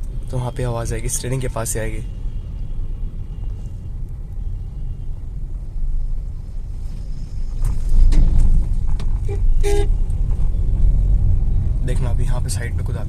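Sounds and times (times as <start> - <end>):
road rumble inside car: 0.0 - 13.0
knocks and rattles from steering: 7.6 - 11.0.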